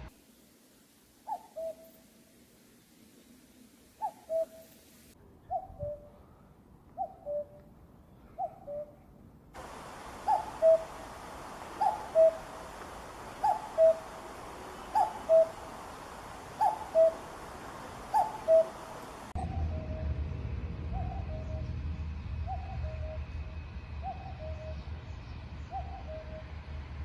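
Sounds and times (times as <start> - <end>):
steady hiss: 0.0 - 5.2, 9.6 - 19.4
cuckoo calling: 1.2 - 2.0, 4.0 - 4.8, 7.0 - 7.6, 9.6 - 20.0.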